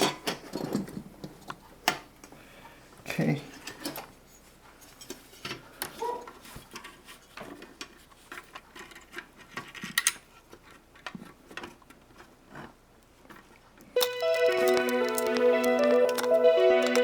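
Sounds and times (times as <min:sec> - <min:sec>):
clicks and taps of parts handled: 0:14.7 - 0:17.0.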